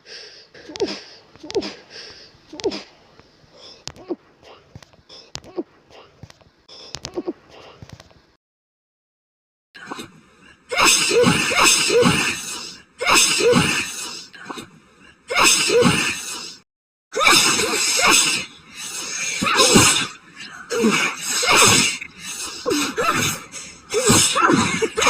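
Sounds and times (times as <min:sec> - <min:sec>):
woman sneezing: 0:10.7 - 0:14.2, 0:15.3 - 0:16.6, 0:17.2 - 0:18.5, 0:19.4 - 0:20.1, 0:20.7 - 0:25.0.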